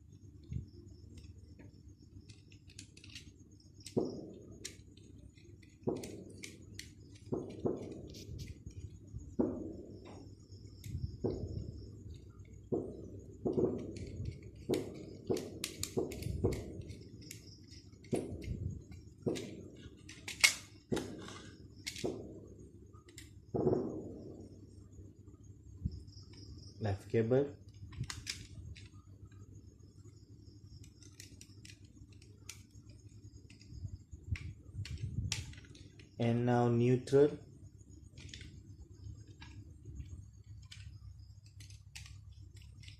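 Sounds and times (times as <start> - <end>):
low steady hum: 0.0 - 42.9
plastic socket knocks and clicks: 2.3 - 8.1, 10.8 - 22.4.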